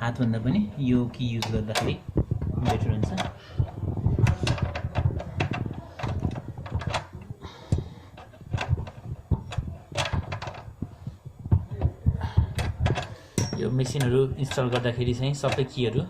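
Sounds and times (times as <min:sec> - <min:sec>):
metal clicks and taps: 0:04.2 - 0:07.2, 0:12.5 - 0:15.7.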